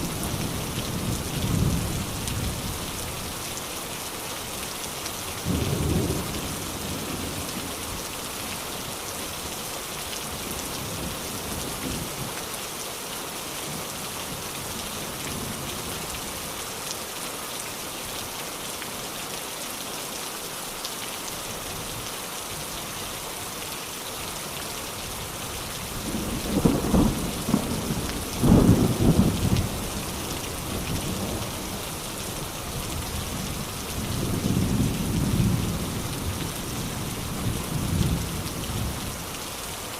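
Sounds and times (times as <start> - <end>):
heavy rain hissing: 19.0 - 39.9.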